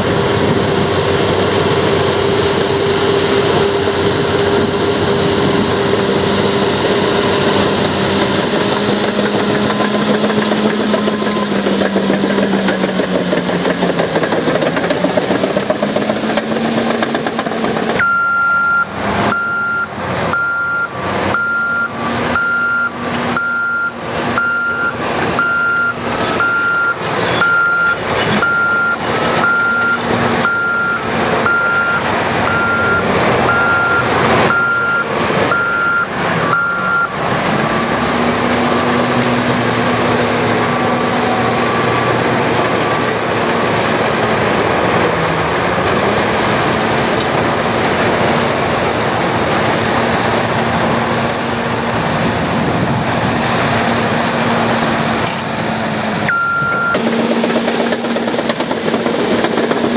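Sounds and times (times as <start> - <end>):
diesel engine running: 0.0 - 59.9
backup alarm beeping: 18.0 - 37.1, 56.3 - 57.0.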